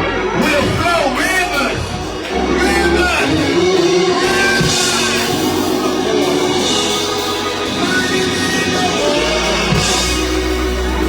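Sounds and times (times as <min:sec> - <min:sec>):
people singing: 0:00.0 - 0:11.0
sustained instrumental chords: 0:00.0 - 0:11.0.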